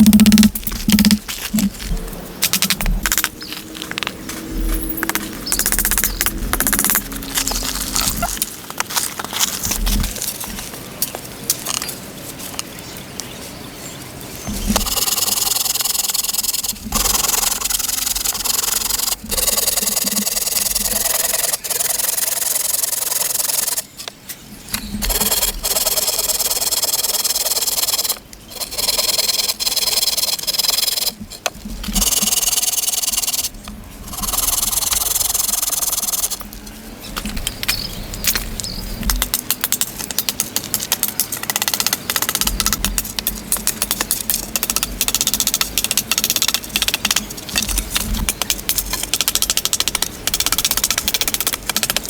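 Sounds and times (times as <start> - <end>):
scraping and rubbing on wood: 25.0 - 52.0.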